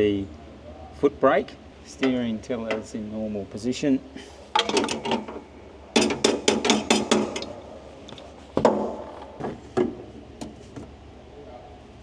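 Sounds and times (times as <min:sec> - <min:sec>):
metal-on-metal clanking: 0:04.6 - 0:10.6.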